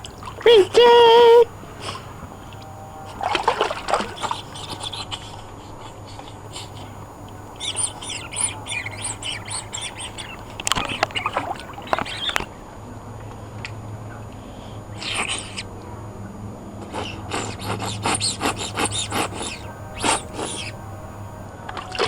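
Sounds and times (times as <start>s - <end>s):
songbird chirping: 0.0s - 5.0s, 6.5s - 12.5s, 18.5s - 21.4s.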